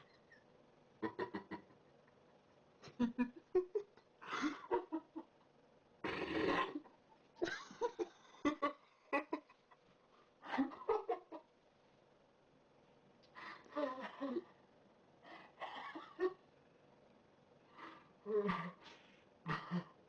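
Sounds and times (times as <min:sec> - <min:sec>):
person burping: 0:06.0 - 0:06.8.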